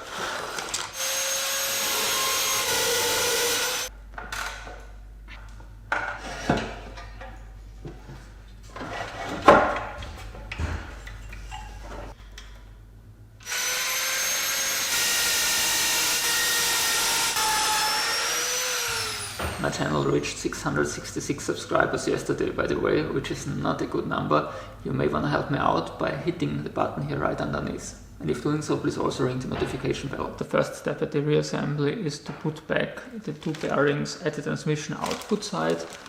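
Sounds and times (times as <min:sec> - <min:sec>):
power tool whining: 0:00.0 - 0:03.9, 0:13.4 - 0:19.6.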